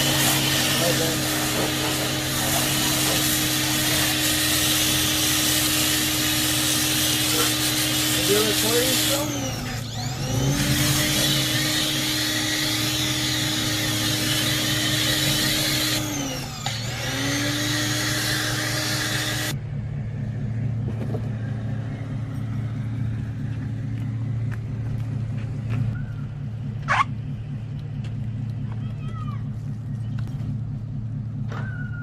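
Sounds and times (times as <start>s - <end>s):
water spray hissing: 0.0s - 16.0s
pressure washer motor whine: 0.0s - 24.4s
low hum: 9.3s - 32.0s.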